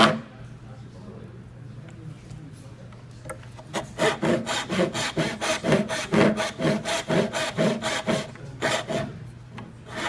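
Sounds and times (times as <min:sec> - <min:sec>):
hand saw cutting wood: 0:03.7 - 0:09.1.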